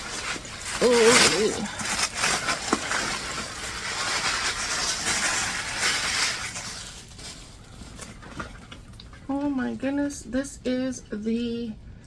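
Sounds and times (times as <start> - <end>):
packaging rustling and crinkling: 0.0 - 9.2.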